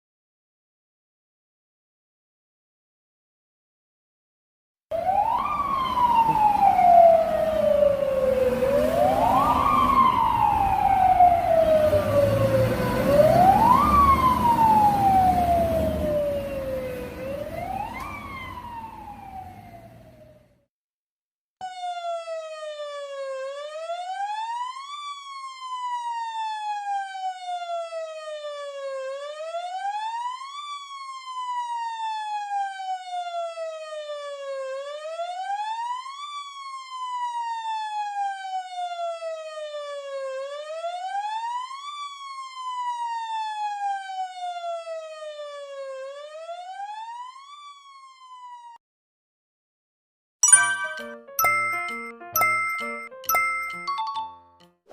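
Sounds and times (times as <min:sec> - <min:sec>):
fire truck siren wailing: 0:04.9 - 0:20.3, 0:21.6 - 0:48.8.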